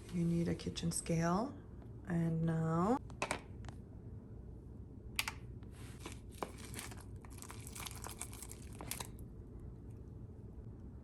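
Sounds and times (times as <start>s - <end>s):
plastic packaging crinkling: 6.0s - 9.2s.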